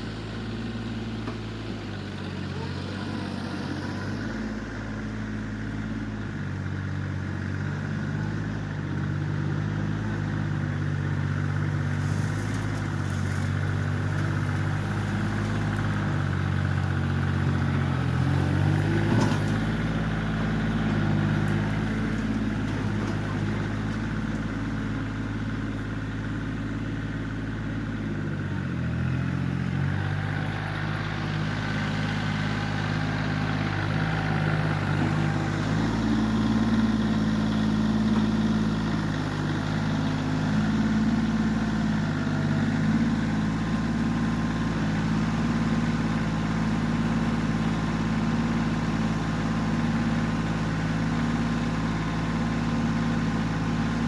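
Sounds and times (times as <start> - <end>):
diesel tractor engine running: 0.0 - 54.0.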